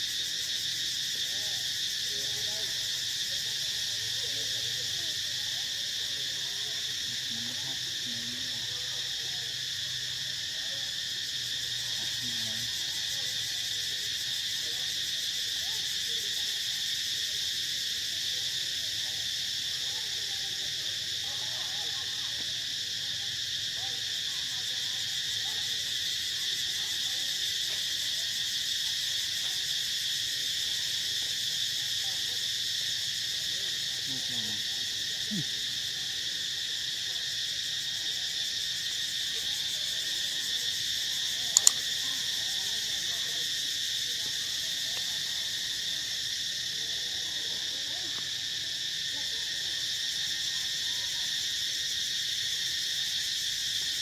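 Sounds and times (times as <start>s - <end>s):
insects droning: 0.0s - 54.0s
sharp click: 41.6s - 41.9s.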